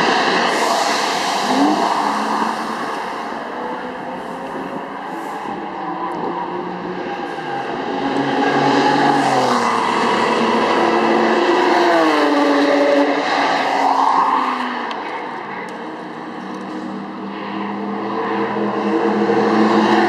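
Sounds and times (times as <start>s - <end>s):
high-revving sports car engine: 0.0s - 4.9s.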